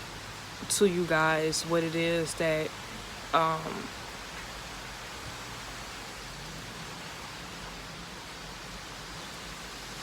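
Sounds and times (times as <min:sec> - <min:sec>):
rain falling steadily: 0:00.0 - 0:10.0.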